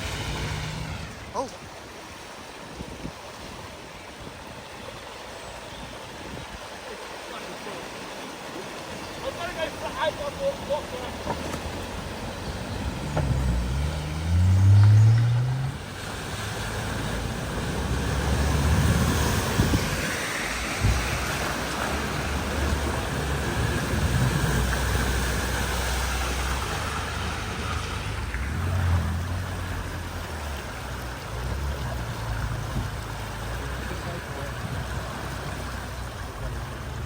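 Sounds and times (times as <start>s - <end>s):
car engine revving: 0.0s - 1.3s, 10.9s - 37.0s
water spraying and rushing: 0.0s - 37.0s.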